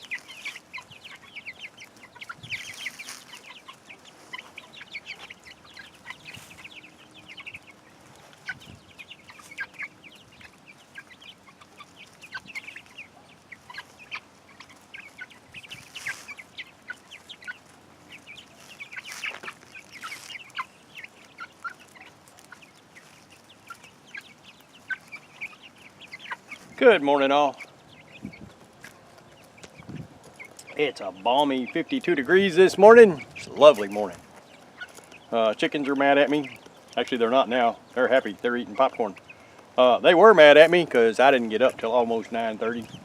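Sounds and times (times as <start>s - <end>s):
chickens clucking: 0.0s - 43.0s.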